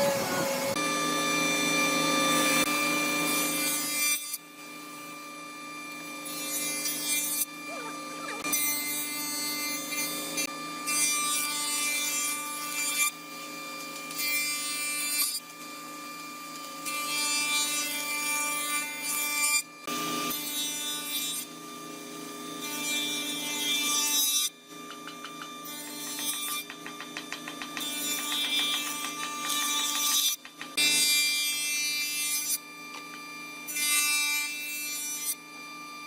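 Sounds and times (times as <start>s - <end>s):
machine tool rasping wood: 24.8s - 31.1s.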